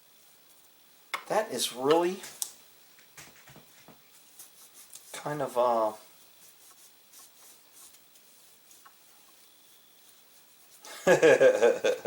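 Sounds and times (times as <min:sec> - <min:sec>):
hands rubbing on gun: 0:03.2 - 0:10.9.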